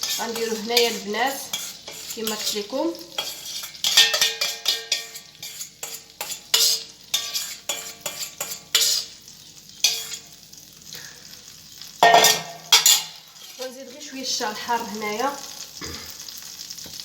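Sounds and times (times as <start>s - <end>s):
spoon scraping frying pan: 0.0s - 10.5s, 12.0s - 14.0s
seafood sizzling in oil: 0.0s - 17.0s.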